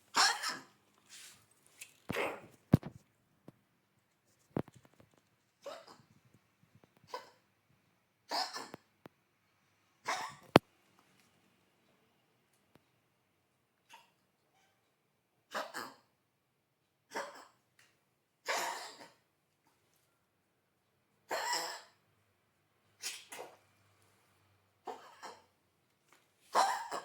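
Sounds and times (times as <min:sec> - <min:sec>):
dog coughing: 0:00.2 - 0:00.7, 0:08.3 - 0:08.8, 0:10.1 - 0:10.6, 0:18.4 - 0:19.2, 0:21.3 - 0:22.0, 0:24.8 - 0:25.5, 0:26.5 - 0:27.0.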